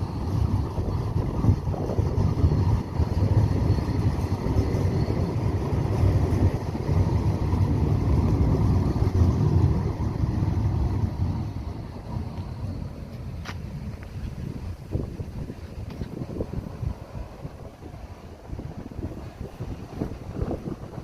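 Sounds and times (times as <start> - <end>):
faint high whine: 0.0 - 21.0
tram rumbling by: 0.0 - 21.0.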